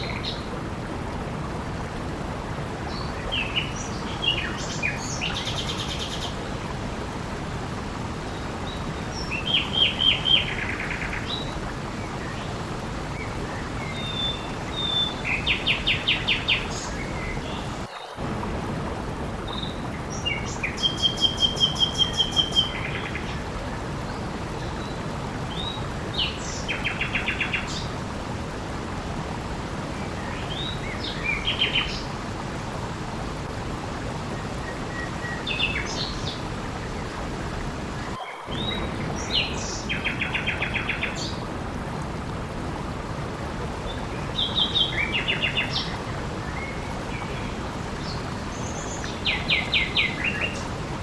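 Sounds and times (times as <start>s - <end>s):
flowing water rushing: 0.0s - 51.0s
songbirds trilling: 34.4s - 41.4s.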